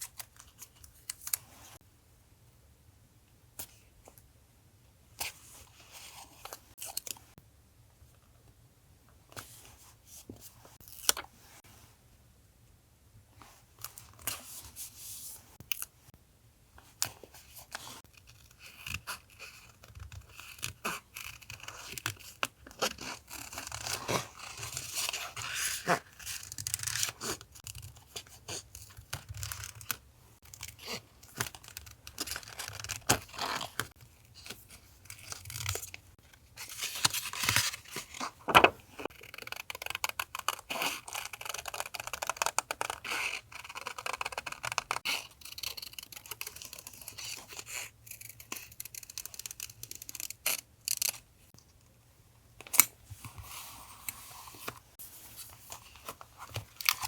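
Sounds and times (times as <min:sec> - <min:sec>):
paper rustling and tearing: 0:36.6 - 0:39.1.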